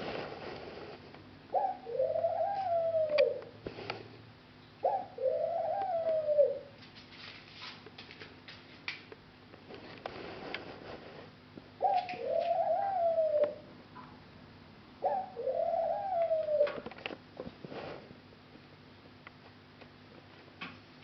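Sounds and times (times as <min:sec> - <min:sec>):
dove cooing: 0:01.5 - 0:03.6, 0:04.8 - 0:06.8, 0:11.8 - 0:13.7, 0:15.0 - 0:16.9.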